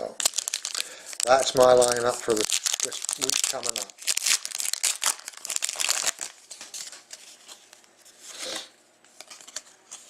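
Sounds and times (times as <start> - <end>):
packaging tearing and crinkling: 0.2 - 7.0.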